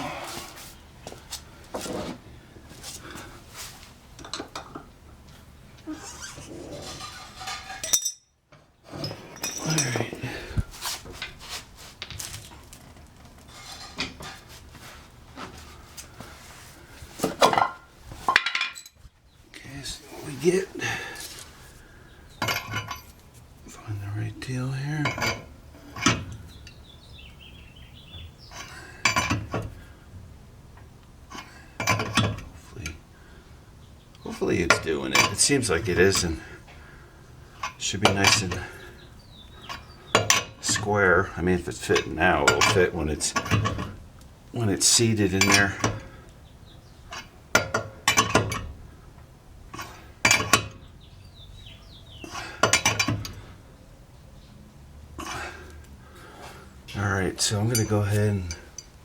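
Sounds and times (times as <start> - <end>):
metal tools clinking and clattering: 5.9 - 10.5, 17.3 - 19.0, 22.4 - 23.2, 25.0 - 26.4, 31.3 - 32.4, 37.6 - 38.8, 41.9 - 43.9, 45.4 - 46.1, 47.1 - 48.7, 49.8 - 50.8, 52.4 - 53.4.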